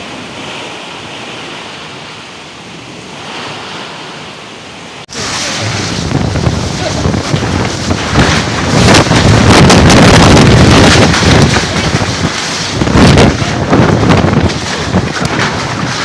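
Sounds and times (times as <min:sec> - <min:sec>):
wind buffeting microphone: 0:05.1 - 0:16.0.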